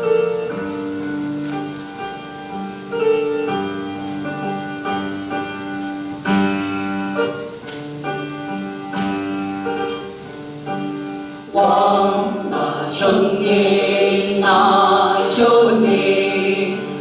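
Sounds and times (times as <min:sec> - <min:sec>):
keyboard piano chords: 0:00.0 - 0:17.0
chorus singing: 0:10.6 - 0:17.0.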